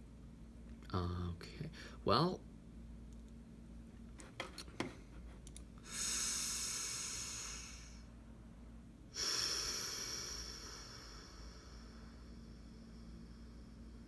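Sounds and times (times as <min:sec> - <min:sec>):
person exhaling: 0:05.8 - 0:08.2, 0:09.1 - 0:14.0.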